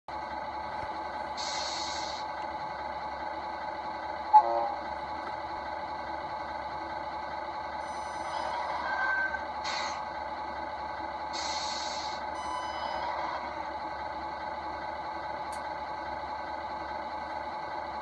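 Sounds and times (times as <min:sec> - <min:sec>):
toy truck mechanical hum: 0:00.8 - 0:03.7.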